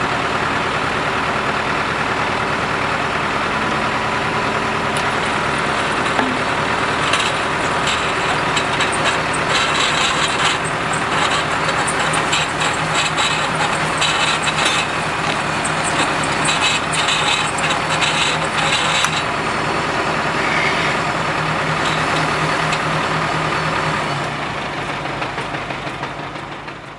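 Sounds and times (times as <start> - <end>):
truck engine hum: 0.0 - 26.9
fast metallic rattling: 4.9 - 19.5.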